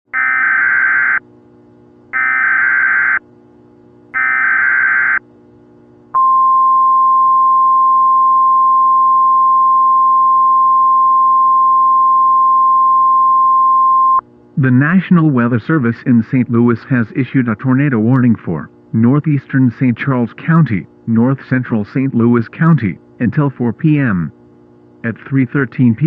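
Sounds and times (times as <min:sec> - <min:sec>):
steady warning alarm tone: 0:00.1 - 0:01.2, 0:02.1 - 0:03.2, 0:04.1 - 0:05.2
faint low hum: 0:00.2 - 0:26.0
buzzy data bursts: 0:02.2 - 0:03.2, 0:04.2 - 0:05.2.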